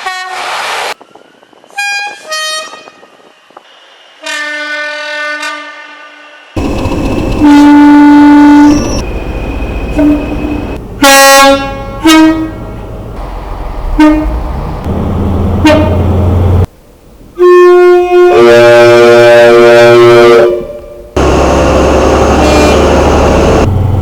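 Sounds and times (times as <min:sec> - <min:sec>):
low train rumble: 0:01.0 - 0:24.0
train air horn blasts: 0:01.7 - 0:03.0, 0:04.2 - 0:06.5, 0:07.4 - 0:09.0, 0:09.9 - 0:12.8, 0:13.9 - 0:14.4, 0:15.6 - 0:16.2, 0:17.4 - 0:21.0, 0:22.3 - 0:23.1.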